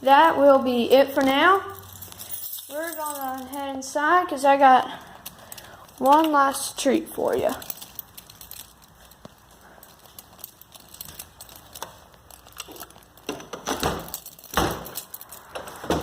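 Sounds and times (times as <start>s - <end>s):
crinkling: 4.8s - 16.0s.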